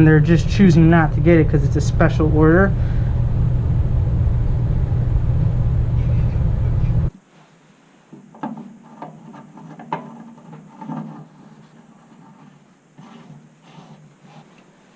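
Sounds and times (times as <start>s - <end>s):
loud low rumble: 0.0s - 7.1s.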